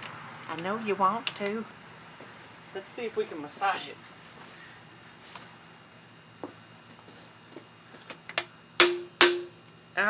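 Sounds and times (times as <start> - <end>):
crickets chirring: 0.0 - 10.0
metal tools tapping: 8.8 - 9.6.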